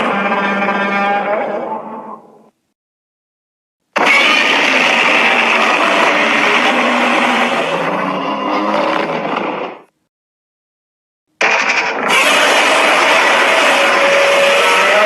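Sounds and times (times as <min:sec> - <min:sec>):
harsh grinding monster roar: 0:04.0 - 0:09.9, 0:12.0 - 0:15.0.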